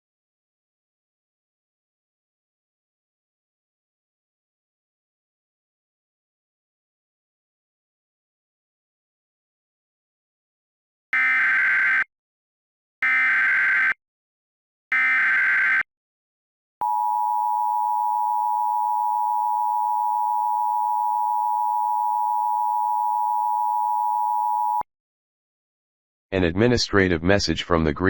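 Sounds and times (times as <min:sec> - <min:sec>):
buzzy data bursts: 0:11.2 - 0:12.0, 0:13.0 - 0:14.0, 0:14.9 - 0:15.8
two-tone attention signal: 0:16.8 - 0:24.8.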